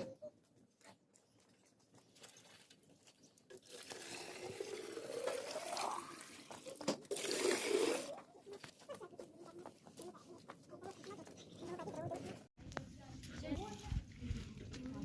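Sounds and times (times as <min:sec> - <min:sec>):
water pouring: 0:02.2 - 0:08.2.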